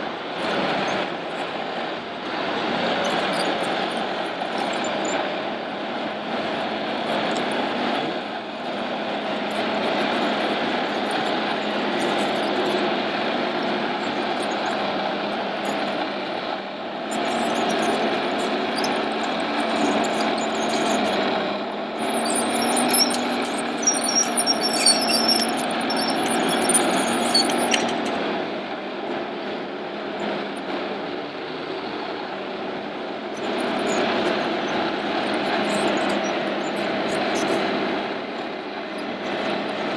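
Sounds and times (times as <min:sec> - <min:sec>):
model machines running: 0:00.0 - 0:39.9
high-pitched squeaks: 0:17.1 - 0:21.4, 0:22.0 - 0:28.2.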